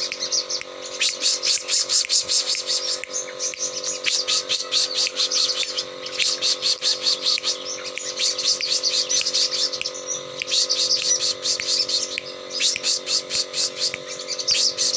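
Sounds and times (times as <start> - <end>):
bird chirping high notes: 0.0 - 14.9.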